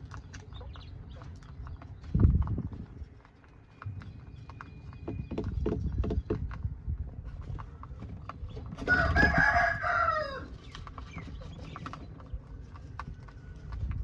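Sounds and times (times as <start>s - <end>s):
rooster crowing: 8.8s - 10.5s.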